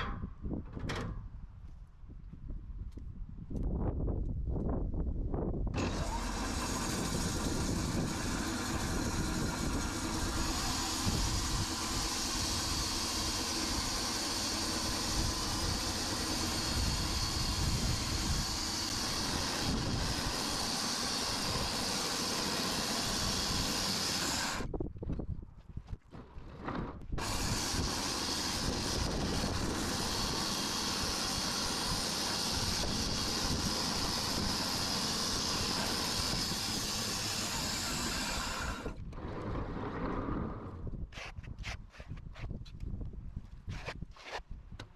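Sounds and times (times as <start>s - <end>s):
sawmill blade cutting log: 5.8s - 24.7s, 26.1s - 42.1s.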